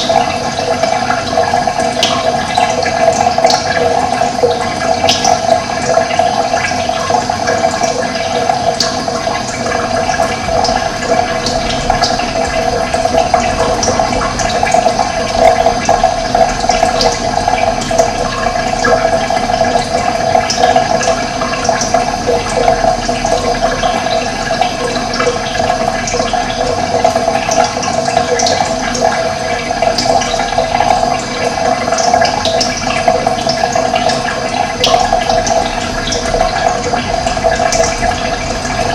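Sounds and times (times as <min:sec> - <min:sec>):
running water: 0:00.0 - 0:38.9.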